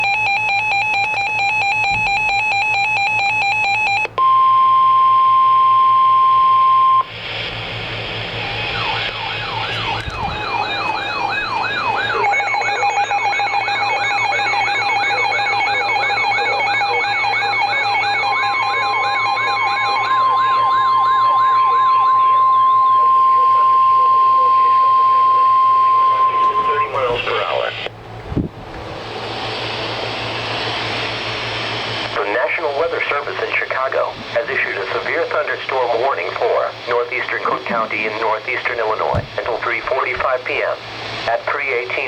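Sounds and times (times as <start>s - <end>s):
electronic siren rising and falling: 0.0s - 7.1s, 8.3s - 27.4s
steady warning tone: 0.0s - 28.0s.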